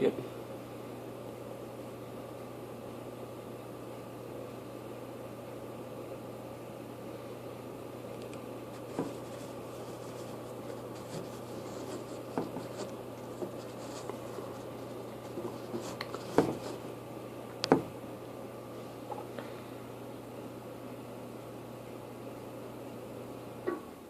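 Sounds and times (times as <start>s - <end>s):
steady electrical hum: 0.0s - 24.0s
scratching and rubbing handling noise: 8.7s - 17.0s
loud knocks: 17.7s - 18.0s.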